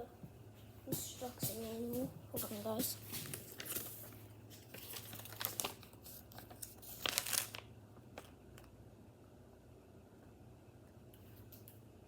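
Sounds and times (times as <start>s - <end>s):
paper rustling and crinkling: 1.5s - 8.3s.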